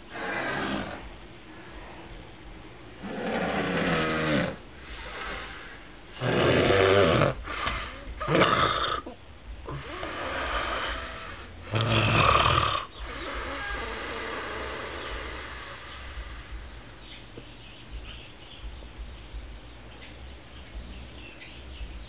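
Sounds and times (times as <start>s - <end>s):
quiet breaths: 0.0s - 8.3s
man snoring heavily: 0.1s - 1.1s, 3.0s - 9.1s, 9.7s - 16.5s.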